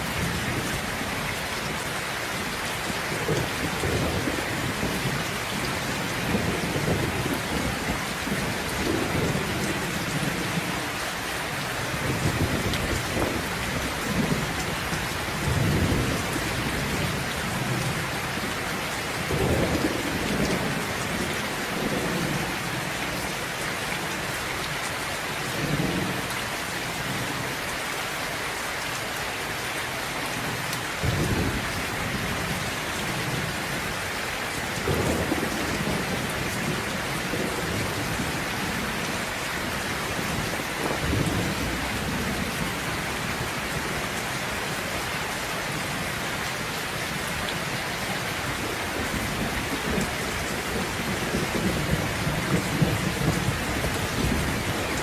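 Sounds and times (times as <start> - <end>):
steady rain falling: 0.0 - 55.0
thunder rumbling: 11.6 - 18.5, 31.0 - 33.7, 34.8 - 44.4, 48.6 - 55.0.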